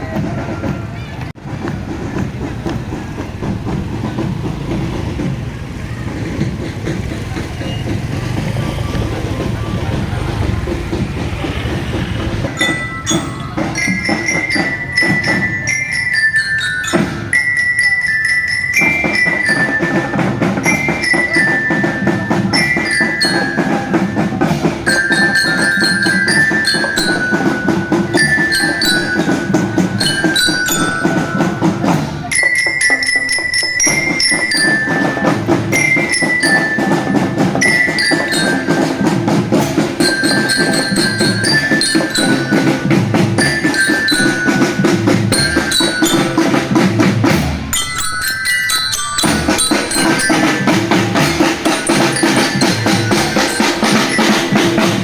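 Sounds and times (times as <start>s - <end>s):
snare and bass drums beating: 0.0s - 16.0s, 18.8s - 55.0s
marching glockenspiel melody: 0.0s - 55.0s.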